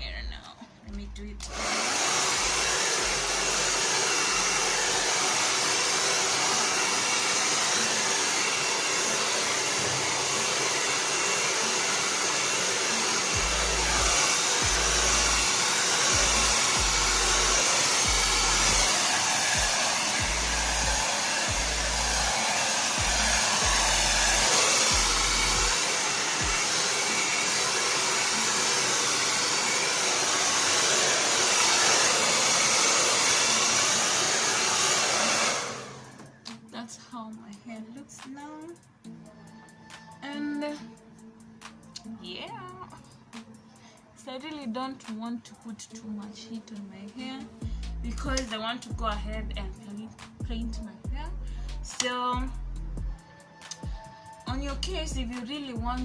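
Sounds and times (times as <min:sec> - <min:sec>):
blow dryer running: 0:01.5 - 0:36.3.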